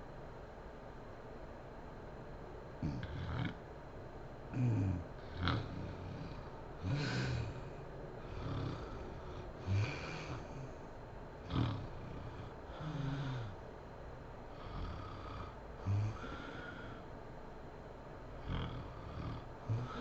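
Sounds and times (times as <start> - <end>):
woman snoring: 2.8 - 3.6, 4.6 - 10.7, 11.4 - 13.6, 14.5 - 17.0, 18.4 - 20.0.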